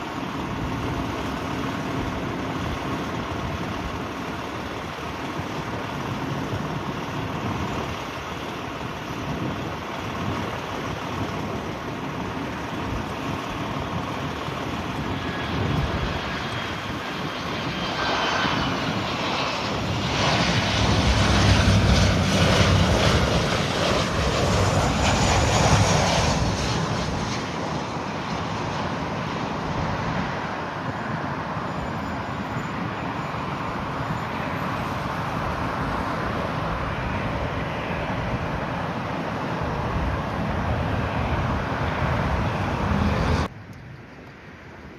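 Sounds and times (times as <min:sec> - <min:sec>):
jet engines passing: 0:00.0 - 0:44.9.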